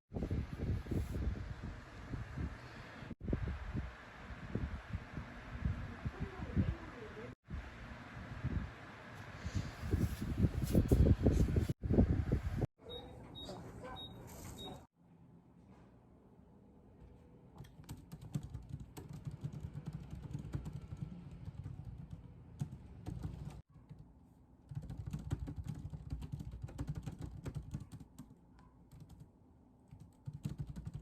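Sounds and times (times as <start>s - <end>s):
typing on computer keyboard: 17.6s - 24.0s, 24.7s - 29.3s, 29.9s - 31.0s.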